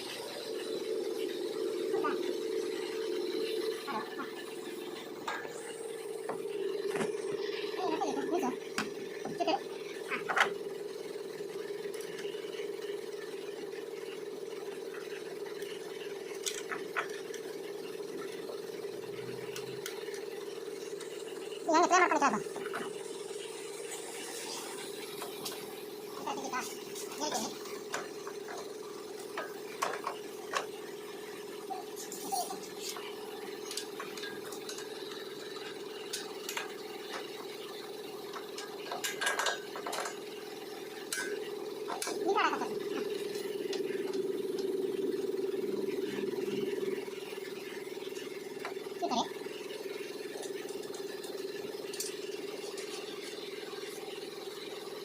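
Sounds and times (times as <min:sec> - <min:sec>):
steady mechanical hum: 0:00.0 - 0:55.0
metal tools clinking: 0:38.3 - 0:40.3.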